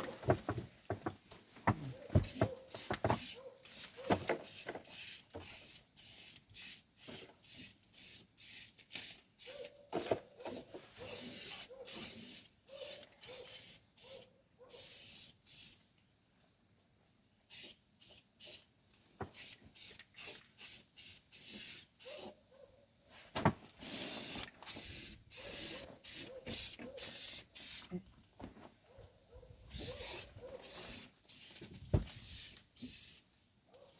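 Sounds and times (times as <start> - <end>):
aerosol can spraying: 2.2 - 15.8, 19.3 - 22.3, 23.8 - 27.9, 29.7 - 33.2.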